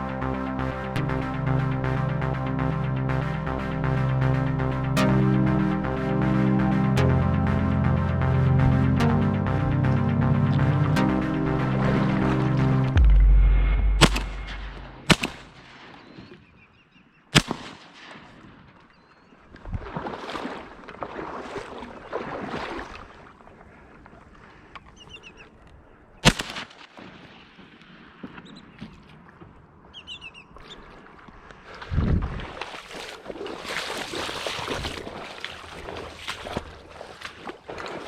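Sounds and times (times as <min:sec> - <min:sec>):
rushing noise: 0:11.2 - 0:15.7.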